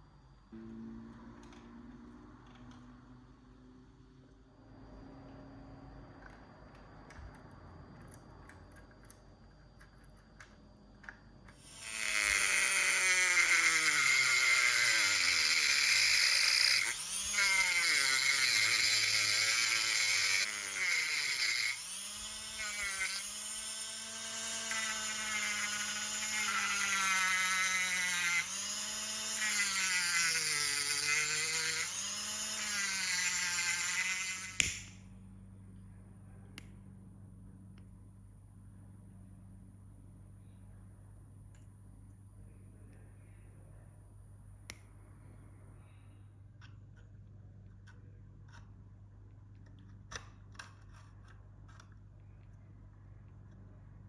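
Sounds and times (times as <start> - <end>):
small electric motor whirring: 11.5 - 35.0.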